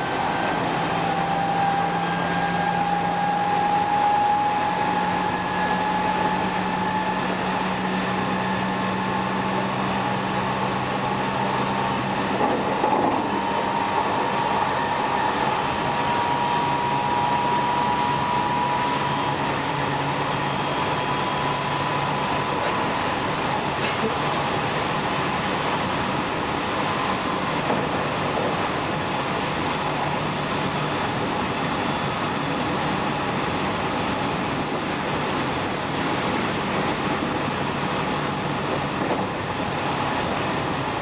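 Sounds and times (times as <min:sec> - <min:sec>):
electric train motor whine: 0:00.0 - 0:41.0
wheels rumbling on rails: 0:00.0 - 0:41.0.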